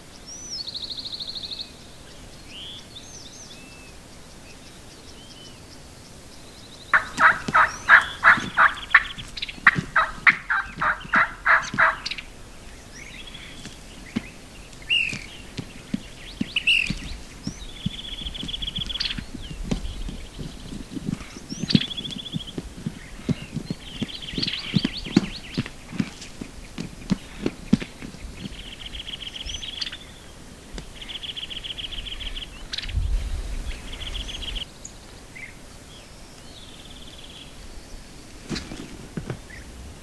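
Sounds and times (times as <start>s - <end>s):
songbirds chirping: 0.0s - 40.0s
turkey calling: 6.9s - 30.2s.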